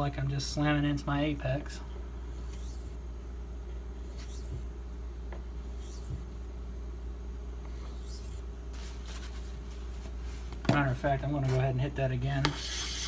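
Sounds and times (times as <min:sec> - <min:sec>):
low electrical hum: 0:00.0 - 0:13.0
knife scraping on sharpening stone: 0:02.5 - 0:02.8, 0:05.7 - 0:06.1, 0:12.4 - 0:13.0.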